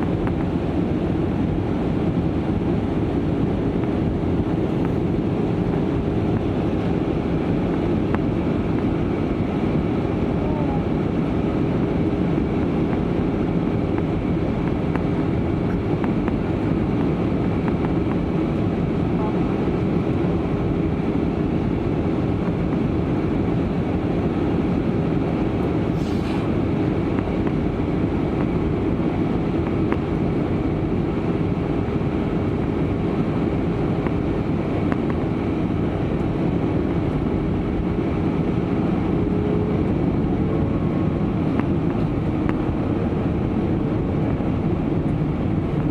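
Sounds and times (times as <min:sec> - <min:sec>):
airliner cabin roar: 0:00.0 - 0:45.9
constant low hum: 0:00.0 - 0:45.9.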